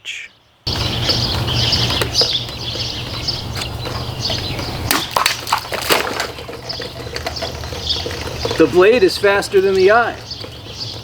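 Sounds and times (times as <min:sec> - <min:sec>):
high chirping: 0:00.0 - 0:05.2
steady low hum: 0:00.7 - 0:05.2.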